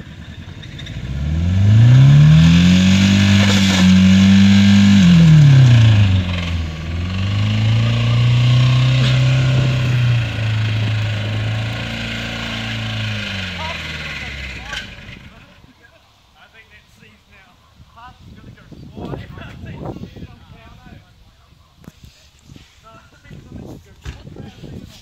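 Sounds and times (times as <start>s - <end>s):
car engine revving hard: 0.0s - 15.4s.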